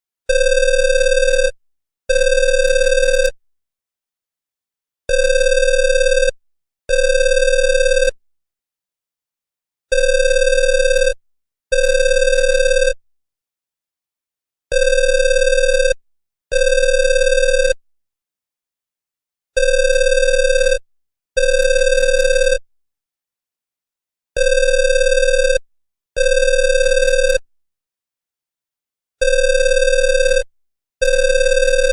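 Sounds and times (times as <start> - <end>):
telephone double ring: 5.1 - 6.3.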